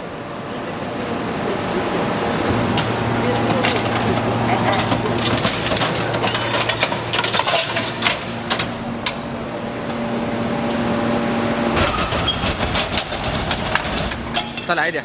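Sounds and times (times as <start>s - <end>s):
hydraulic hum: 0.0s - 15.0s
metal cracking and clanking: 2.7s - 9.4s, 11.7s - 15.0s.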